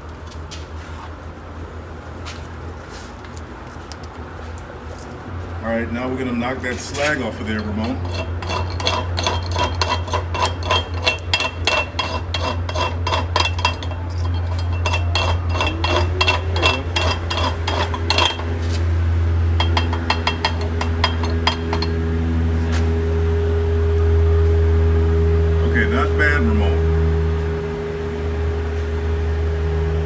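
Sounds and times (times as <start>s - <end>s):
hammer clinking on steel: 19.6s - 22.0s.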